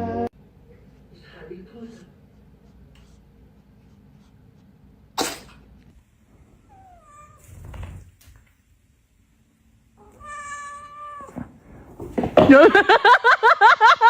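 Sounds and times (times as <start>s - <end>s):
cat meowing: 6.6s - 7.5s, 10.0s - 11.5s.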